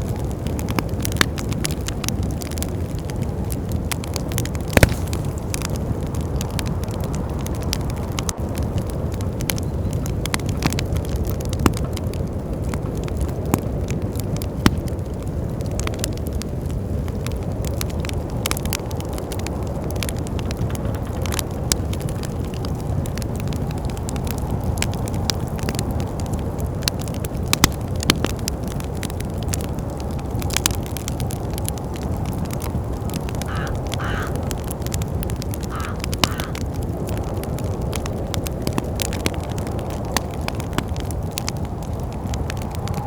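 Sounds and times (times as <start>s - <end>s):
wood fire crackling and popping: 0.0s - 43.0s
wind rushing: 17.4s - 43.0s
crow cawing: 33.4s - 34.7s, 35.6s - 36.7s.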